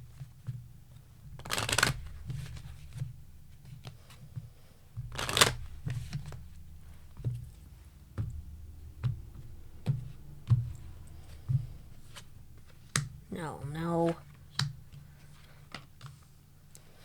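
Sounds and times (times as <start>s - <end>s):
cards tapping and clicking: 1.3s - 3.1s, 5.0s - 6.4s
cards riffle shuffling: 1.4s - 3.0s, 5.1s - 6.4s.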